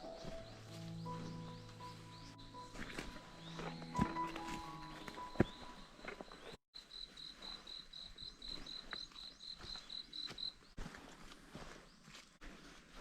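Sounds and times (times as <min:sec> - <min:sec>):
insect chirping: 0:05.4 - 0:10.6.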